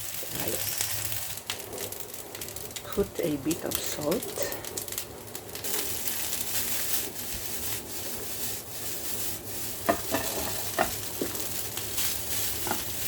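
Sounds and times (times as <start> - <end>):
frying sizzle: 0.0 - 13.0
spatula scraping rice in a wok: 5.7 - 13.0.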